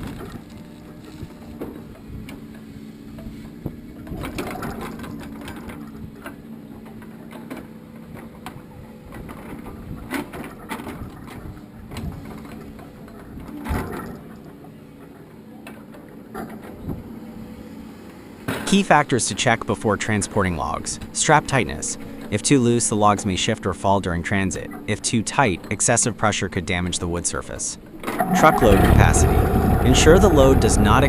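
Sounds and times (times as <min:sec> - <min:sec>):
low machine hum: 0:27.5 - 0:31.0.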